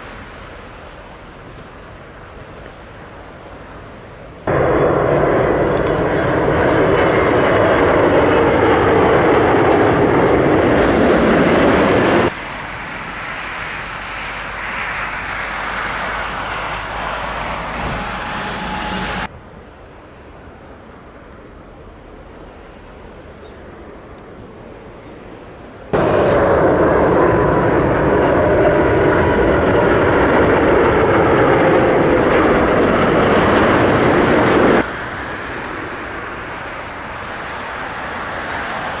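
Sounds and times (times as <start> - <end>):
jet engines roaring: 0.0 - 20.0, 22.4 - 39.0.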